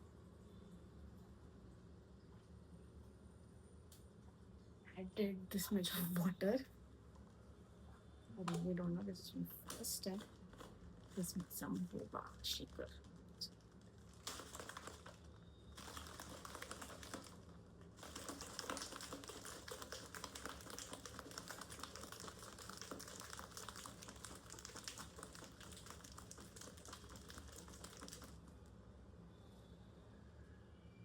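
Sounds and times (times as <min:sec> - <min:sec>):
ice cubes rattling in shaken bottle: 0:09.5 - 0:28.5.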